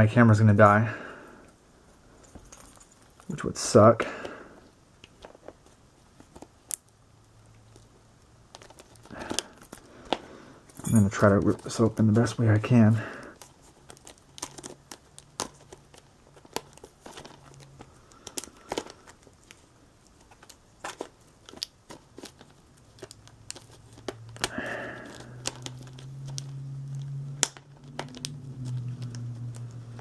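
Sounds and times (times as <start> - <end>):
packaging being ripped and crinkled: 7.7 - 9.9, 13.4 - 30.0.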